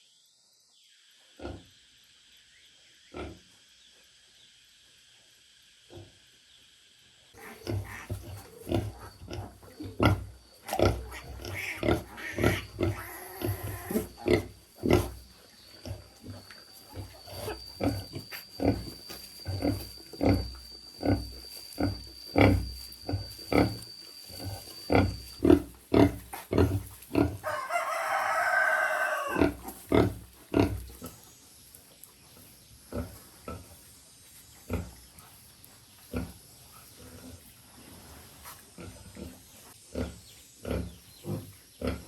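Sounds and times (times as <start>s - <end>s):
pig grunting: 7.4s - 23.8s, 24.4s - 27.4s, 29.0s - 31.2s
pig squealing: 7.4s - 30.8s.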